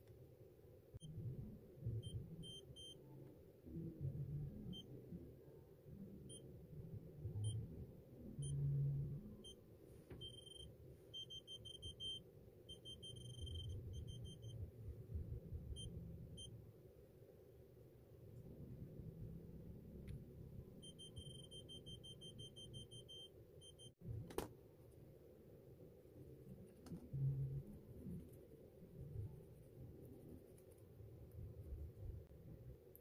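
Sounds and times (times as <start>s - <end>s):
electronic door lock beeps: 10.2s - 14.6s, 20.8s - 24.0s.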